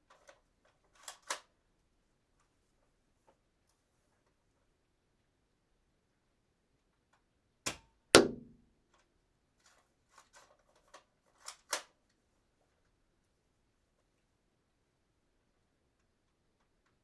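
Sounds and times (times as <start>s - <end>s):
dart gun shot: 7.7s - 8.6s.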